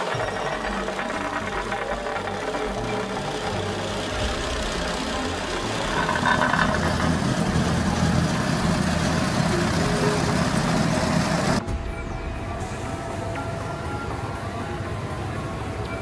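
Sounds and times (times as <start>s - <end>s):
machinery engine running: 0.0s - 11.9s.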